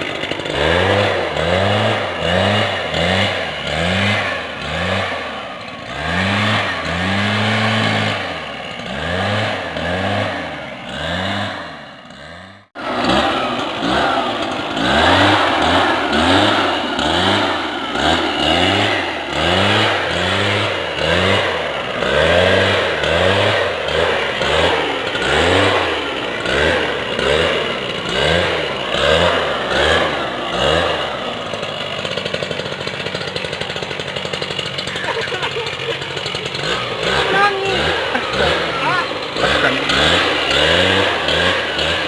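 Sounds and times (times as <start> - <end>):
sprayer pump engine running: 0.0 - 11.0, 12.8 - 42.0.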